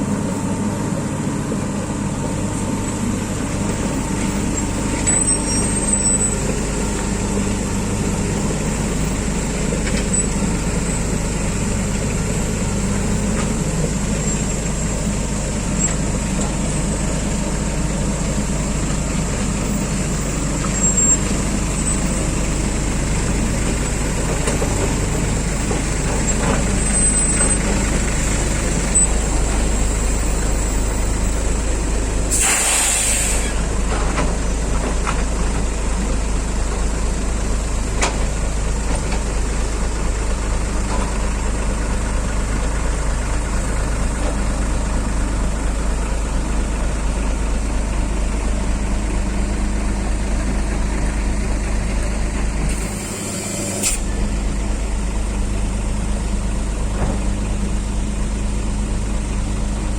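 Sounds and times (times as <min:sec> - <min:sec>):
heavy diesel engines running: 0:00.0 - 0:59.9
air brakes hissing: 0:32.2 - 0:33.7, 0:52.7 - 0:54.3.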